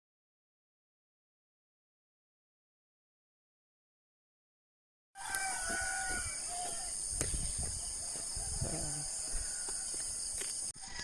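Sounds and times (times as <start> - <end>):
shrill chorus of insects: 5.2 - 11.0.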